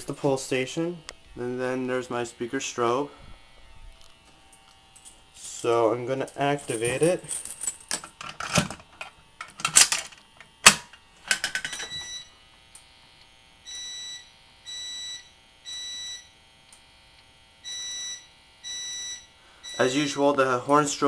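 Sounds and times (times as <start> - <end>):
fire alarm horn beeping: 11.7 - 12.4, 13.6 - 16.4, 17.6 - 20.2.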